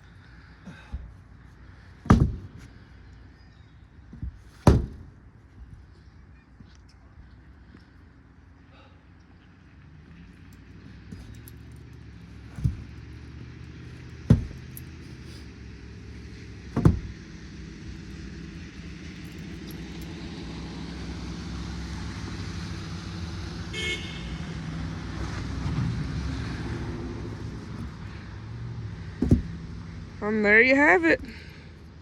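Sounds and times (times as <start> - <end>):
sharp knocks: 2.1 - 2.6, 4.2 - 5.1, 14.2 - 14.8, 16.7 - 17.3, 29.2 - 29.6.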